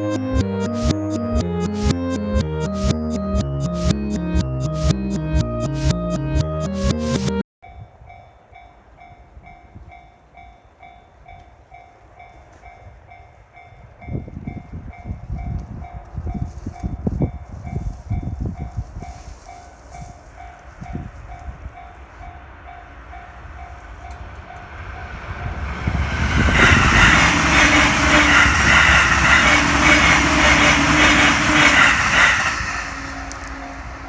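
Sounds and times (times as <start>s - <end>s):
train wheels rumbling on rails: 7.6s - 34.0s.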